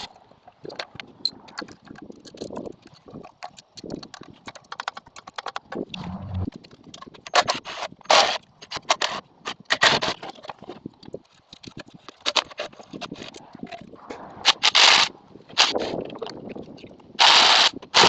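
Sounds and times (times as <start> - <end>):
short louder rasps: 6.0 - 6.5.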